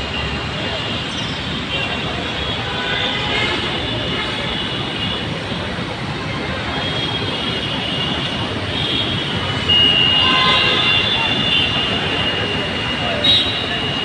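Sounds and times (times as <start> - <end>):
road traffic noise: 0.0 - 14.0.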